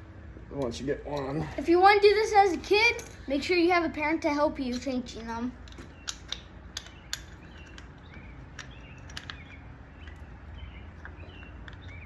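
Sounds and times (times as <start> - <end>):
low steady hum: 0.0 - 12.0
small bird chirping: 5.8 - 12.0.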